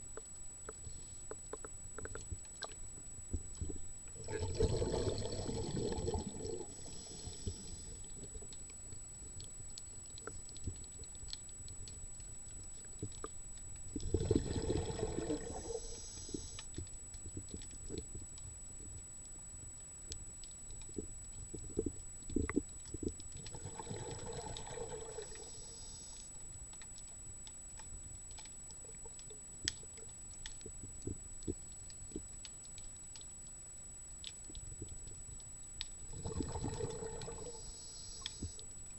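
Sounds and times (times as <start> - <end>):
small underwater clicks and crackles: 0.0 - 38.9
regulator exhalation bubbling: 4.2 - 8.0, 14.0 - 16.5, 23.5 - 25.6, 36.1 - 37.7.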